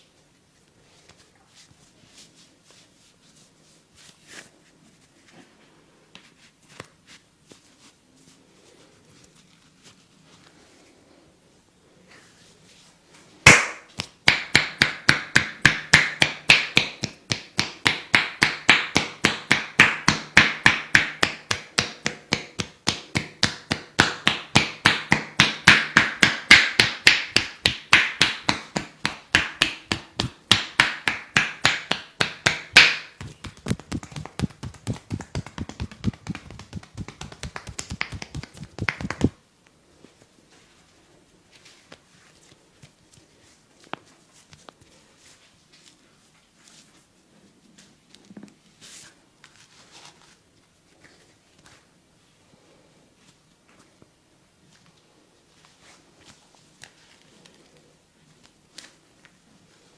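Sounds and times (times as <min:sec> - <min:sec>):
hands slapping a body: 0:13.5 - 0:39.4.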